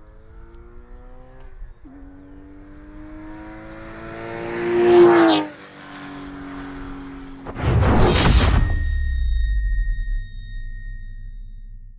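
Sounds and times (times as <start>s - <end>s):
car engine accelerating: 0.0s - 8.6s.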